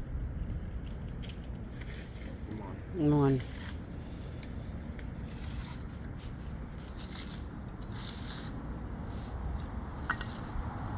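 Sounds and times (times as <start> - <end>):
scraping strokes: 5.2 - 10.6.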